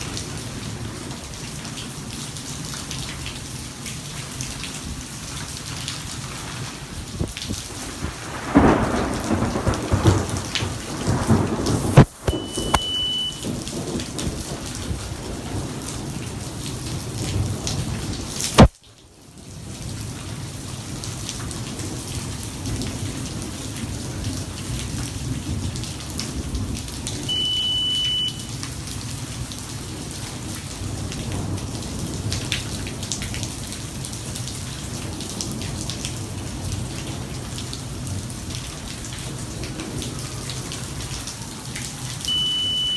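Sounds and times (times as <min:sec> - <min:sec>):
heavy rain: 0:00.0 - 0:42.9
thunder: 0:07.6 - 0:18.7
short high beep: 0:12.2 - 0:13.4, 0:27.3 - 0:28.5, 0:42.3 - 0:42.9.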